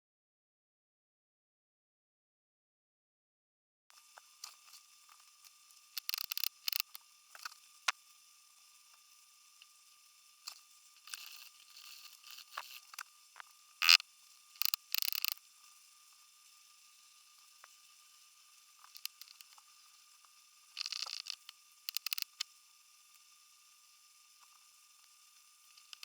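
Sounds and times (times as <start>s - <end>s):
air engine hissing and clicking: 20.9s - 22.4s.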